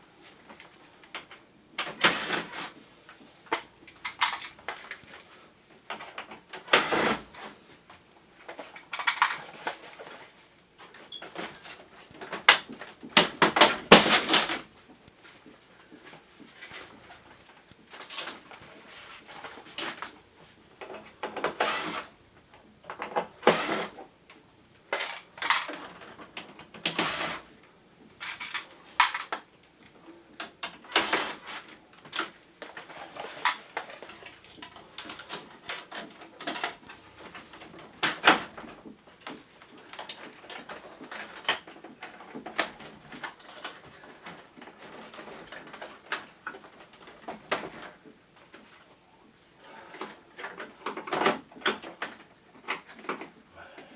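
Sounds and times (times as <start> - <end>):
clicks and knocks of hard parts: 11.3 - 14.7.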